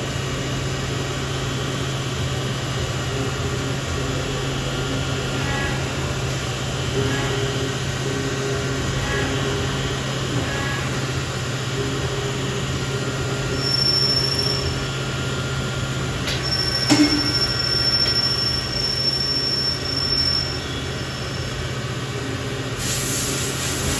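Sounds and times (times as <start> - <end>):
machinery low hum: 0.0 - 23.9
high-pitched whine: 0.8 - 22.8.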